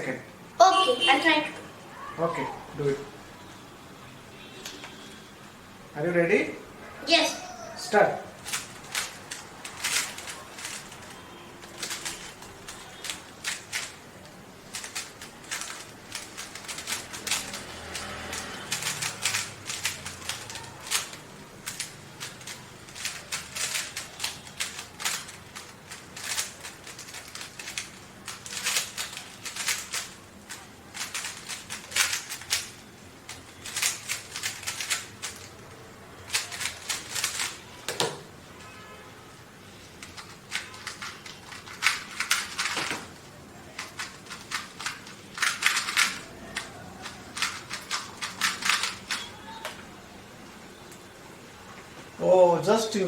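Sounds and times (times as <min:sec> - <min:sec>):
plastic puzzle cube clicking: 0:08.4 - 0:35.5, 0:36.3 - 0:38.2, 0:40.0 - 0:43.1, 0:43.8 - 0:49.8.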